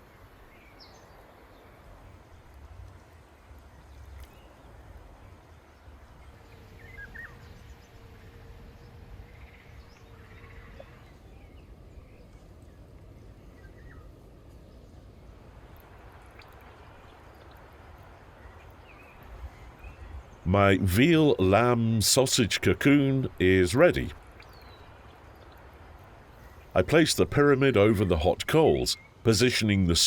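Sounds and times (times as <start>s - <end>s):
faint steady hum: 0.0s - 30.0s
low wind rumble: 0.0s - 30.0s
bird chirps: 23.9s - 26.9s.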